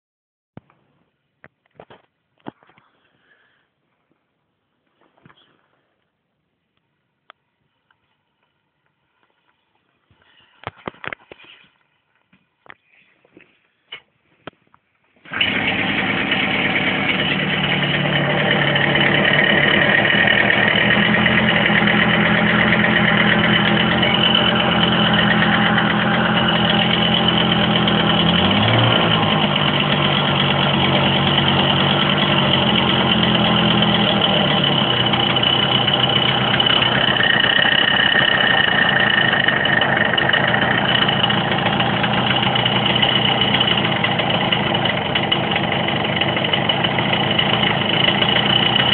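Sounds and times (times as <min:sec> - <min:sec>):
engine revving: 0:15.3 - 0:48.9
moped engine idling with rattle: 0:15.3 - 0:48.9.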